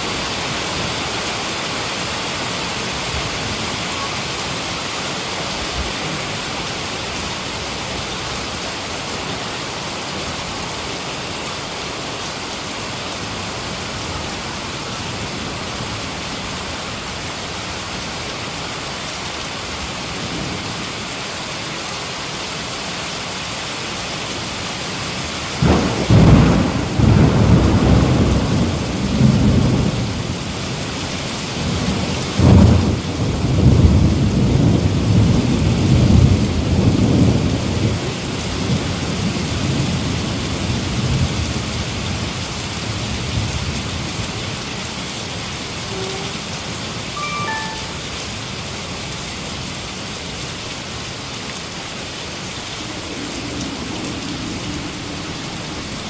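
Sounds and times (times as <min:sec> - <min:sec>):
heavy rain falling: 0:00.0 - 0:56.0
thunder rumbling: 0:25.6 - 0:30.3, 0:52.4 - 0:56.0.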